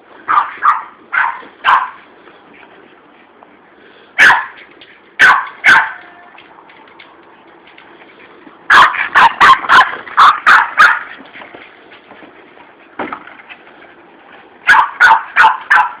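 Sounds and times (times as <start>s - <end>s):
dog barking: 0.3s - 2.0s, 4.2s - 4.6s, 5.2s - 6.2s, 8.7s - 11.1s, 14.7s - 16.0s.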